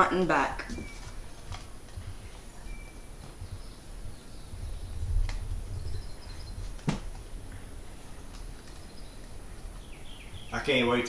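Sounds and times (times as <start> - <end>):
faint bird chirps: 0.6 - 1.3, 2.0 - 11.0
sharp knocks: 6.8 - 7.1.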